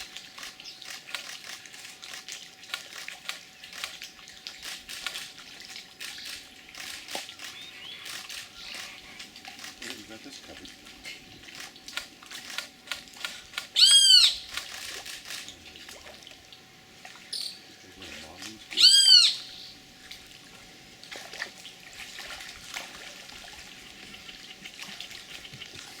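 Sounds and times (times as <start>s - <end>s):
otter squealing calls: 6.2s - 9.3s, 13.7s - 14.9s, 18.7s - 19.8s.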